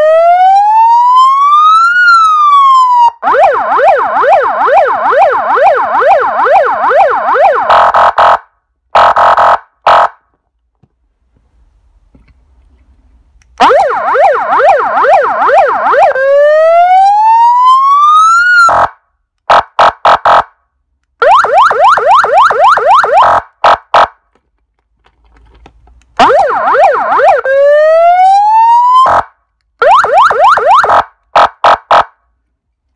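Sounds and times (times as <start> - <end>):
electronic vehicle siren: 0.0 - 8.4, 13.6 - 20.4, 21.2 - 24.1, 26.2 - 32.1.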